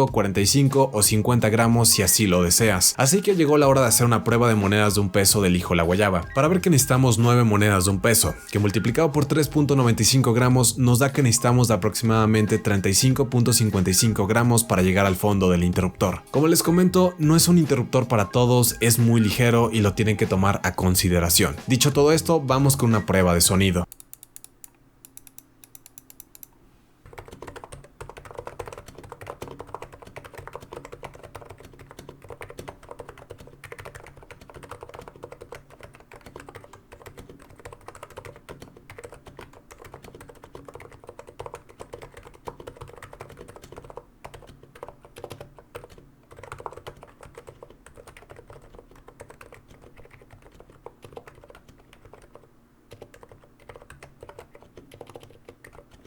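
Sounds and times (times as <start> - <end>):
quiet deep keyboard typing: 0.0 - 22.0, 23.8 - 56.0.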